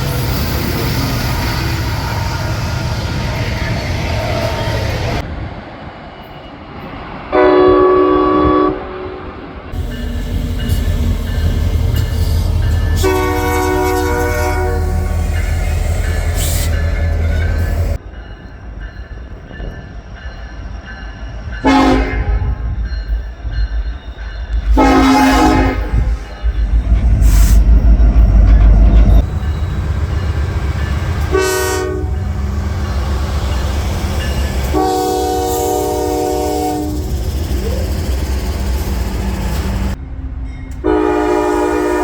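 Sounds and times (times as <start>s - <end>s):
rumble of passing train: 0.0s - 42.0s
locomotive horn blasts: 7.4s - 9.3s, 12.8s - 15.5s, 21.6s - 22.5s, 24.8s - 26.2s, 31.2s - 32.4s, 34.6s - 37.1s, 40.8s - 42.0s.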